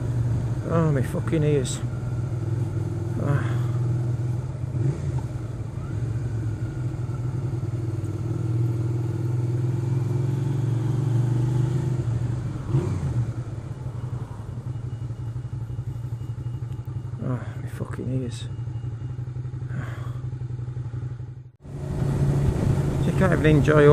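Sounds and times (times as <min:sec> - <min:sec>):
motorcycle engine running: 0:00.0 - 0:23.9
wind rushing over helmet: 0:21.8 - 0:23.0.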